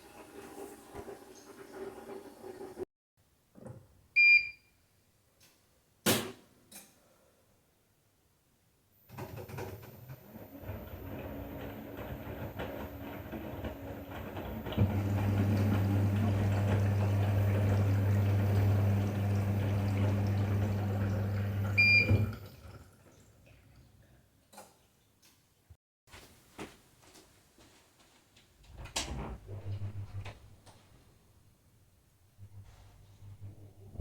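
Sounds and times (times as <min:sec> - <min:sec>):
water hissing into washing machine: 0:00.0 - 0:02.8, 0:10.3 - 0:23.7
washing machine motor humming: 0:09.3 - 0:22.9.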